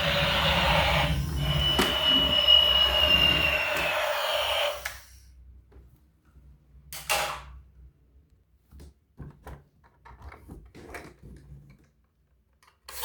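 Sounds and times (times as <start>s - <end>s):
small clicks and knocks of toys: 9.3s - 13.0s.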